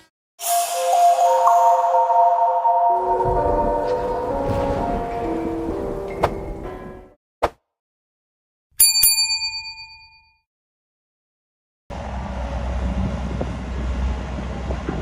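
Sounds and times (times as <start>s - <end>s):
bell-like ding: 0.4s - 4.1s, 8.8s - 10.4s
steady machine rumble: 11.9s - 15.0s.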